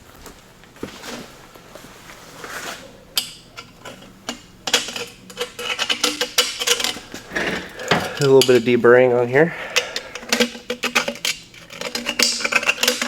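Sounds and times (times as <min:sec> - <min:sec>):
metal tools clicking and knocking: 0:03.2 - 0:08.7, 0:09.7 - 0:13.0
metallic clinking and rattling: 0:03.2 - 0:08.8.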